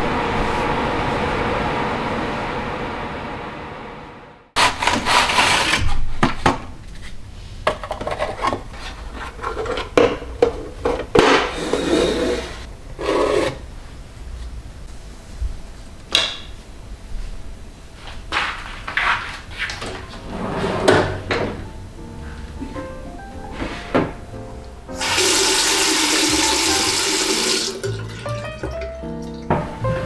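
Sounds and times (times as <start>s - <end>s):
objects rubbing and scraping: 6.9s - 13.7s, 18.9s - 21.6s.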